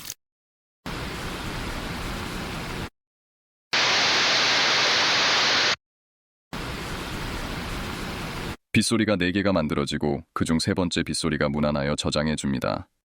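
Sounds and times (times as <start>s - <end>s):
steady rain hiss: 3.8s - 5.8s.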